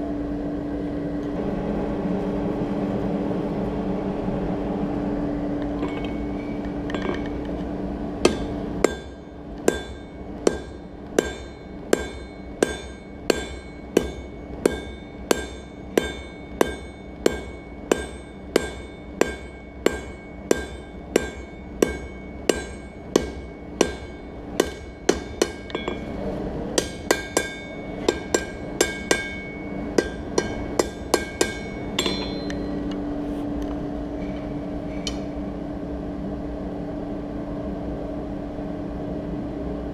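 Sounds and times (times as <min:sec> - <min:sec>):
steady hum: 0:00.0 - 0:39.9
hammer striking steel on anvil: 0:05.8 - 0:07.4, 0:08.2 - 0:32.9.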